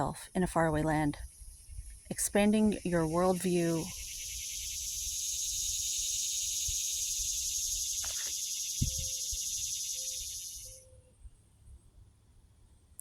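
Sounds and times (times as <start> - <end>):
insect buzzing: 2.9 - 10.8.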